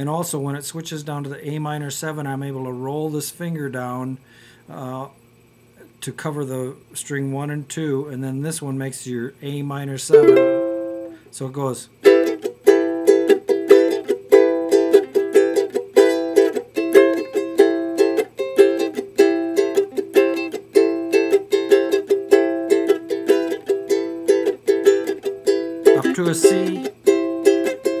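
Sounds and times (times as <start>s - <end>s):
ukulele strumming: 10.1s - 11.2s, 12.0s - 28.0s.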